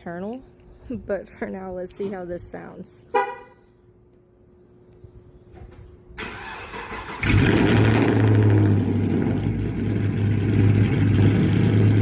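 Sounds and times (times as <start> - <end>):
car engine idling: 7.2 - 12.0.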